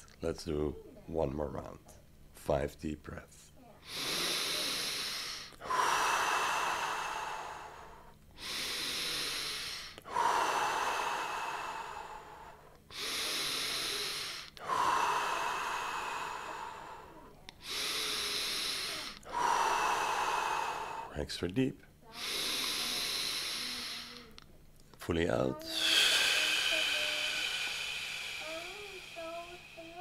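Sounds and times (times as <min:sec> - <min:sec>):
person breathing deeply: 0:03.8 - 0:21.2, 0:22.0 - 0:24.4, 0:25.5 - 0:30.0.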